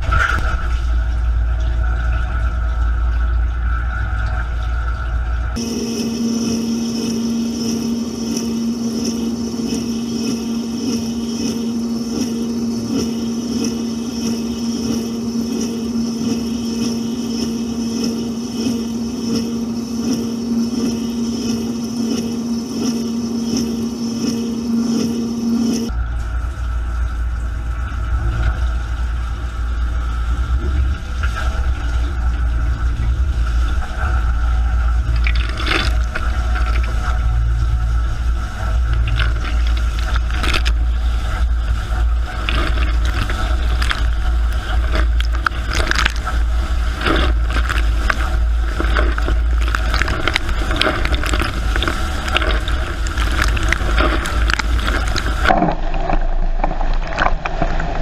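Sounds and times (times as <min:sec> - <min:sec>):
dishwasher pump humming: 0:00.0 - 0:58.0
water jets splashing: 0:00.1 - 0:58.0.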